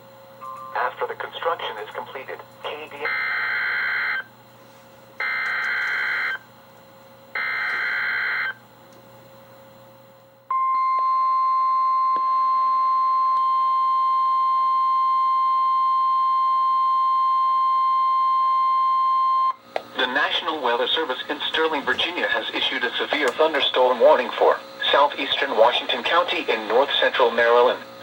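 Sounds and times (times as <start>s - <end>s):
steady warning alarm tone: 3.0s - 4.3s, 5.2s - 6.5s, 7.3s - 8.6s, 10.5s - 28.0s.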